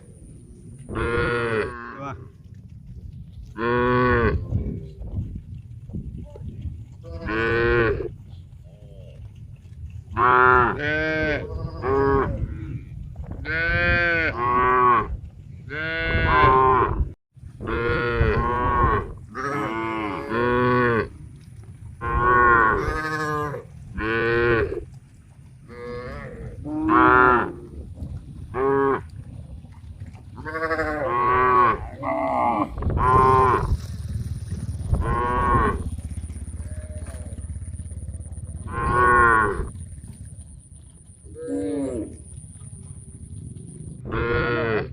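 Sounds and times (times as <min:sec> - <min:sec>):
low rumble: 0:00.0 - 0:44.9
cattle mooing: 0:00.9 - 0:02.3, 0:03.6 - 0:04.7, 0:07.0 - 0:08.2, 0:10.1 - 0:17.0, 0:17.6 - 0:21.2, 0:22.0 - 0:24.9, 0:25.6 - 0:27.8, 0:28.5 - 0:29.1, 0:30.4 - 0:33.9, 0:34.8 - 0:39.8, 0:41.2 - 0:42.3, 0:44.0 - 0:44.9.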